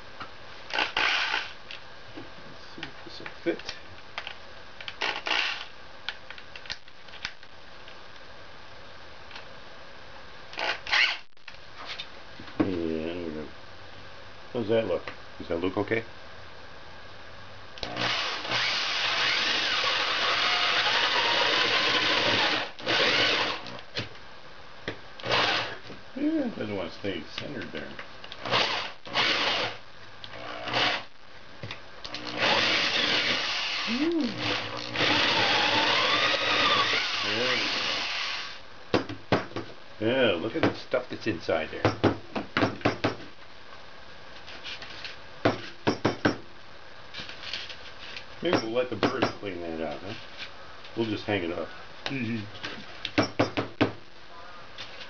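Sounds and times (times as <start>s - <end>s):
electric drill boring gourd: 0.7s - 1.6s, 4.9s - 5.7s, 10.6s - 11.2s, 17.8s - 23.9s, 25.2s - 25.8s, 28.3s - 31.1s, 32.1s - 38.6s.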